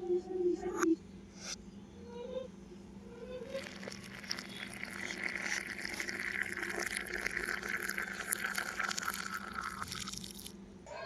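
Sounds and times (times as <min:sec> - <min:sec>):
coffee pouring through a strainer: 0:03.5 - 0:10.5.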